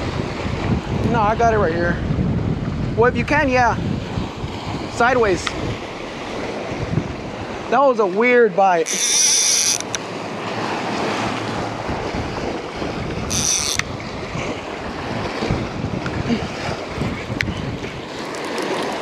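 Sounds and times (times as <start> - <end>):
surf washing on beach: 0.0 - 19.0
wind buffeting microphone: 0.0 - 19.0
high-pitched buzz: 8.8 - 10.4, 13.2 - 14.0.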